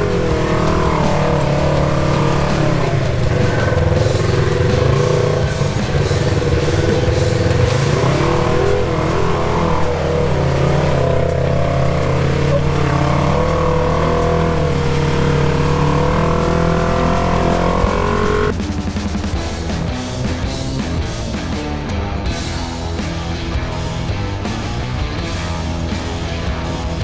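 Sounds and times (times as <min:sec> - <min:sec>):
off-road vehicle engine revving: 0:00.0 - 0:19.9.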